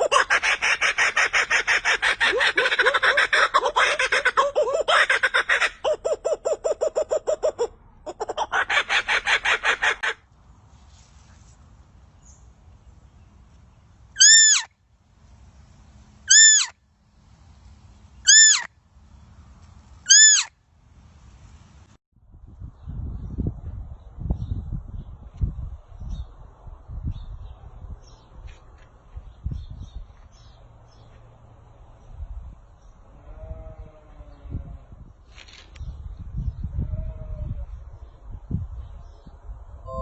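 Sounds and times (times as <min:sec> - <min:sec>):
animal arched calls: 0:00.0 - 0:10.2, 0:14.2 - 0:14.7, 0:16.3 - 0:16.8, 0:18.2 - 0:18.7, 0:20.1 - 0:20.5.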